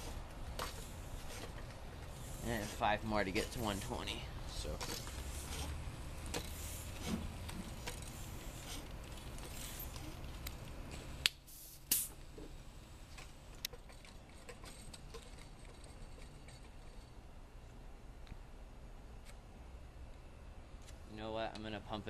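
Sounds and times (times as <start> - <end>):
hand air pump hissing: 0.0 - 4.0, 4.8 - 10.2.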